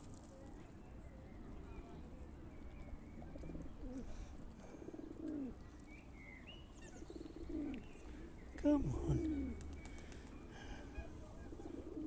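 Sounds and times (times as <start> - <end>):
small birds chirping: 0.0 - 12.0
pigeons cooing: 3.3 - 5.6, 7.0 - 12.0.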